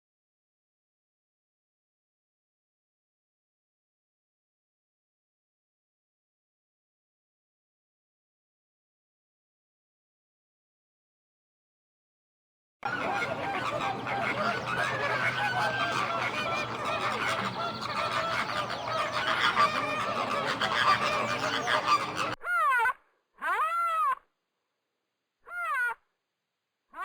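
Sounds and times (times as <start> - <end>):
geese honking: 12.8 - 22.4.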